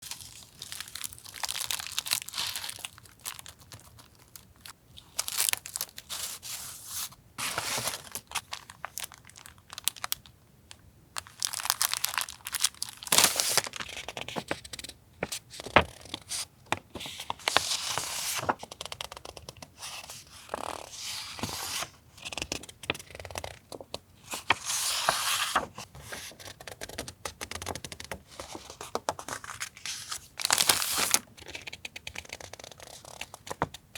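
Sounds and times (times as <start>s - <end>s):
paper rustling and tearing: 15.3s - 18.7s, 24.3s - 26.5s, 28.3s - 31.2s.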